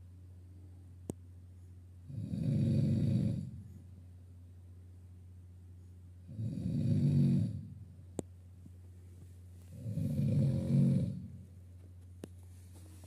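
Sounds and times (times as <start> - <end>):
steady low hum: 0.0 - 13.0
person snoring loudly: 2.1 - 3.6, 6.3 - 7.8, 9.7 - 11.4.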